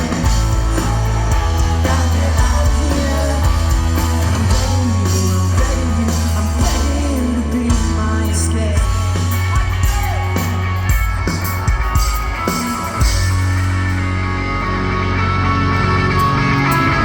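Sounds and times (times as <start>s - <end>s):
person singing: 0.0s - 10.6s
rock band playing live: 0.0s - 17.0s.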